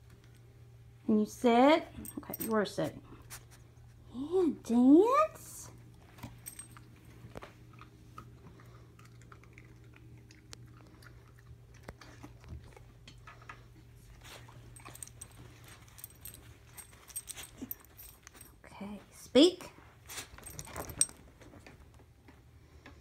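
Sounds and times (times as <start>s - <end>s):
dog chewing crunches: 6.2s - 18.4s.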